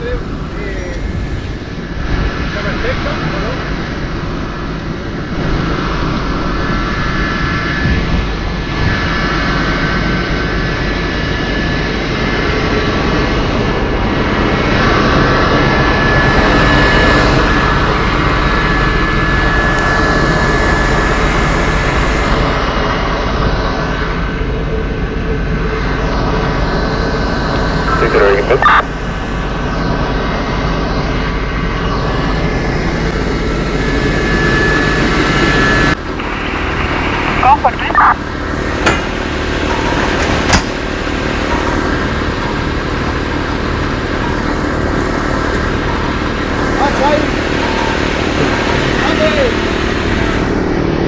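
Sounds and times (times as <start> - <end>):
engine running with high whine: 0.0 - 51.0.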